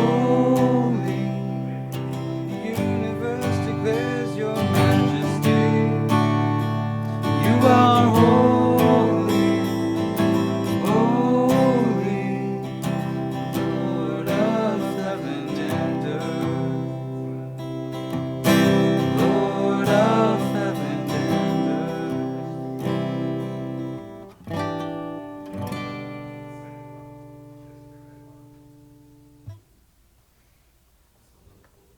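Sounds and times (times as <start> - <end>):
person singing: 0.0 - 17.6, 18.3 - 23.7
acoustic guitar strumming: 0.0 - 29.8.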